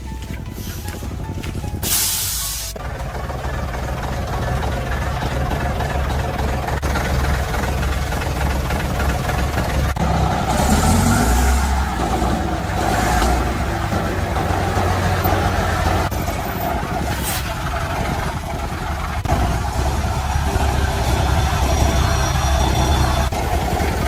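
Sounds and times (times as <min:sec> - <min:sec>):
truck engine rumbling: 0:00.0 - 0:24.0
brief hiss: 0:01.8 - 0:02.8.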